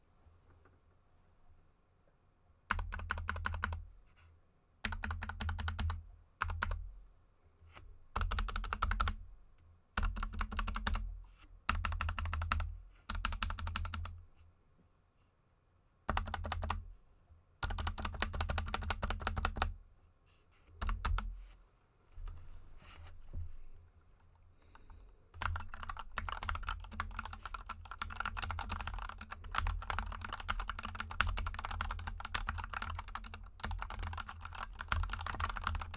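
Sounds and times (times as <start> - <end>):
typing on mechanical keyboard: 2.7 - 3.8, 4.8 - 6.8, 8.2 - 9.2, 10.0 - 11.0, 11.7 - 14.2, 16.1 - 16.8, 17.6 - 19.7, 20.8 - 21.3, 25.3 - 35.9.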